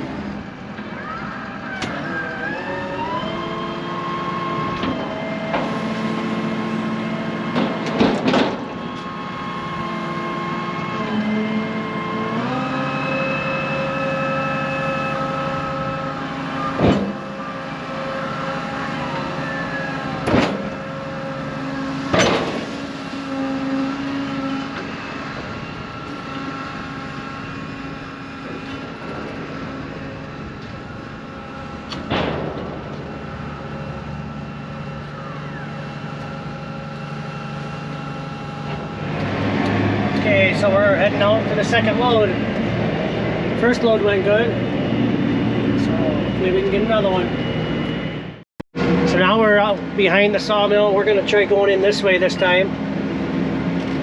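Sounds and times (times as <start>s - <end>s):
tractor engine running under load: 13.6s - 54.0s.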